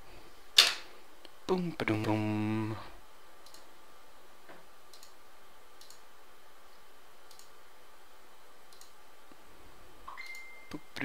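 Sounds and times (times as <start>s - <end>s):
steady low hiss: 0.0s - 11.0s
faint sharp clicks: 3.4s - 3.6s, 7.3s - 7.5s, 8.7s - 9.0s.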